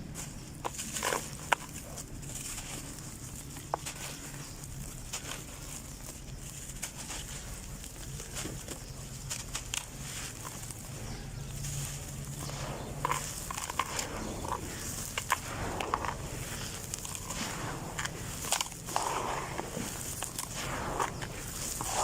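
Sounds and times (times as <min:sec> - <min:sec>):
dry dirt crumbling and crunching: 0:00.0 - 0:22.0.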